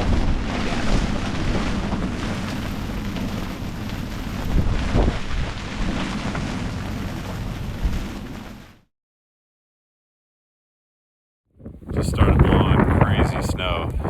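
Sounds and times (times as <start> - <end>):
strong wind buffeting microphone: 0.0 - 8.4, 11.6 - 14.0.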